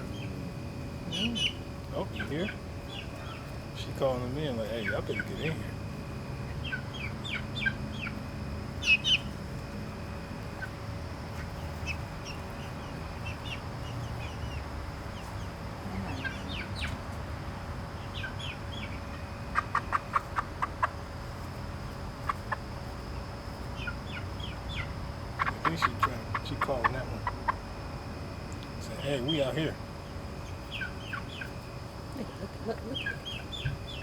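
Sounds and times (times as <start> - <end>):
hens clucking and calling: 1.1 - 5.7, 10.5 - 17.2, 18.0 - 27.8.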